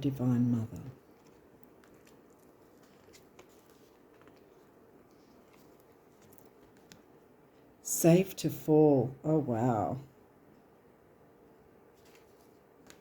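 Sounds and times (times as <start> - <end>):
faint clicks of cards handled: 1.1 - 7.1, 12.0 - 13.0.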